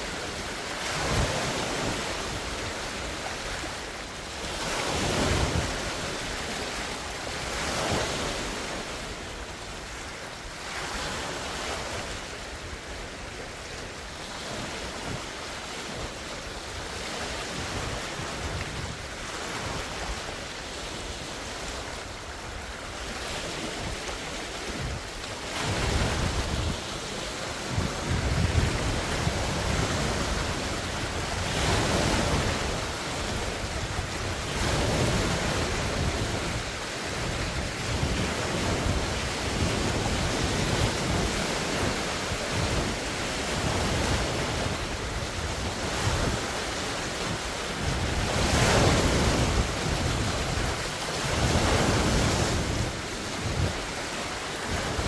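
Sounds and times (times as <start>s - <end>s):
waves breaking on shore: 0.0s - 55.0s
wind buffeting microphone: 14.4s - 20.4s, 21.2s - 55.0s.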